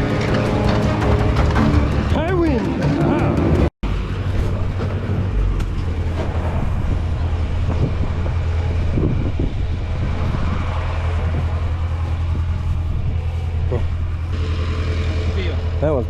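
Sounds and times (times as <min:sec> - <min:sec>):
tractor engine running: 0:00.0 - 0:16.0.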